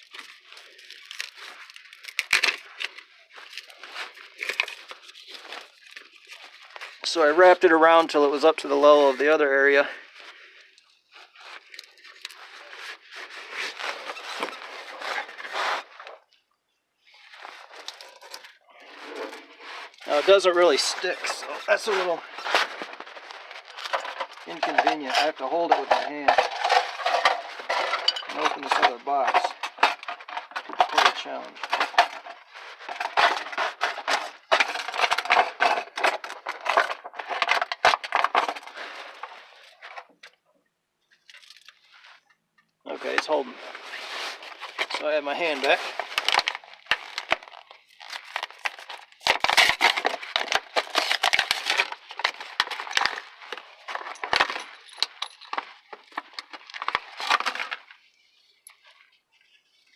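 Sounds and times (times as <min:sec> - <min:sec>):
packaging crackling and tearing: 0:00.0 - 0:07.1, 0:10.3 - 0:16.1, 0:17.2 - 0:27.7, 0:43.7 - 0:58.1
hands rustling and scraping tape: 0:00.0 - 0:16.4, 0:17.0 - 0:40.4, 0:41.1 - 0:59.9.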